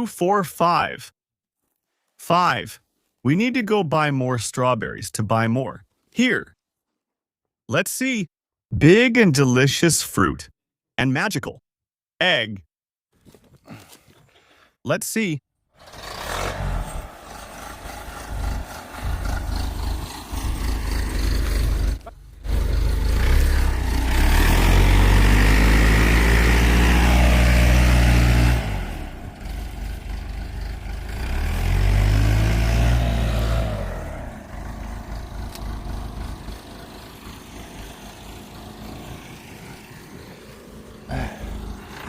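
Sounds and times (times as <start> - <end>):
engine revving: 15.7 - 42.0.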